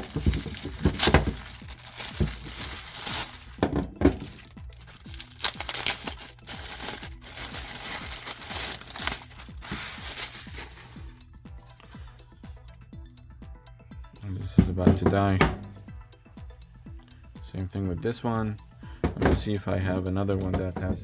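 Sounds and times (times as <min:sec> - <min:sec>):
plastic packaging crinkling: 0:00.0 - 0:11.1
hard plastic clicks and knocks: 0:14.6 - 0:15.8.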